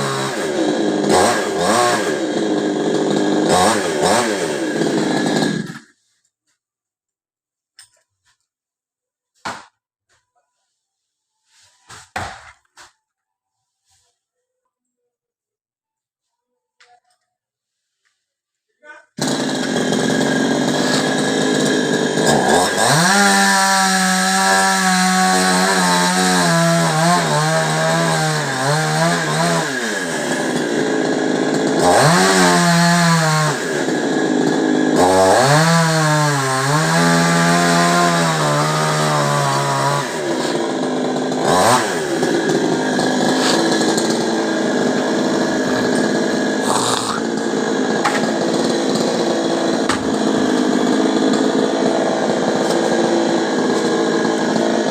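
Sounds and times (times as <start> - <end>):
chainsaw revving: 0.0 - 6.0, 19.2 - 54.9.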